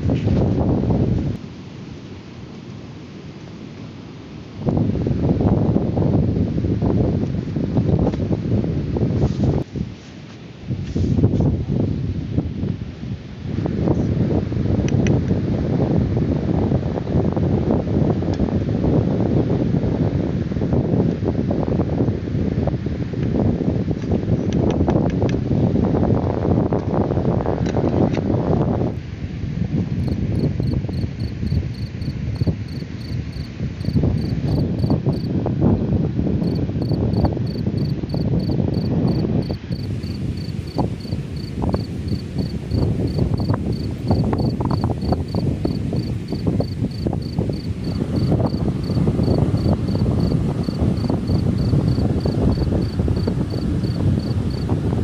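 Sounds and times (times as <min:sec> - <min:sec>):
wind buffeting microphone: 0:00.0 - 0:01.6, 0:04.5 - 0:55.0
cricket chirping: 0:30.0 - 0:35.3, 0:36.4 - 0:54.7.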